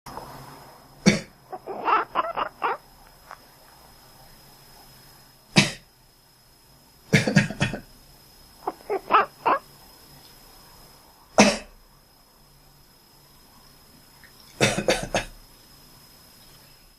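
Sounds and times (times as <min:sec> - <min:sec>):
cat chirping calls: 0:01.5 - 0:02.8, 0:08.6 - 0:09.6
person coughing: 0:05.6 - 0:05.8, 0:07.1 - 0:07.8, 0:11.4 - 0:11.7, 0:14.6 - 0:15.3.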